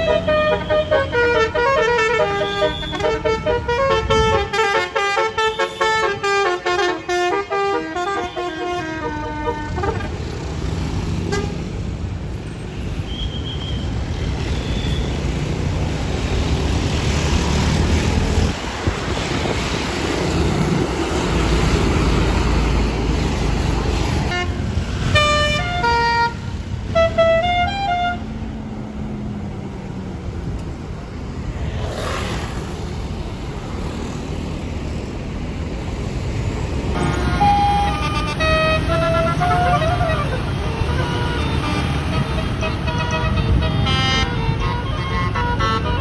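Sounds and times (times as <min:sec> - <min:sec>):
multi-tone air horn melody: 0:00.0 - 0:10.2, 0:24.3 - 0:28.3, 0:37.0 - 0:46.0
bus engine and road noise: 0:00.0 - 0:46.0.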